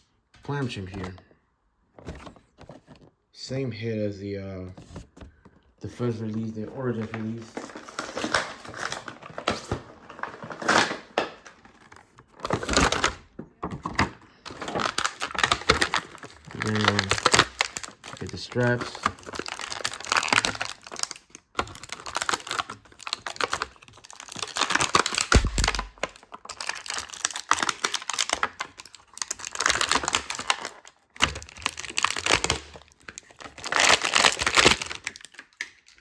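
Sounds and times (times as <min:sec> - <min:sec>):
plastic packaging crinkling: 0:04.8 - 0:36.0
dull thump: 0:25.3 - 0:26.0.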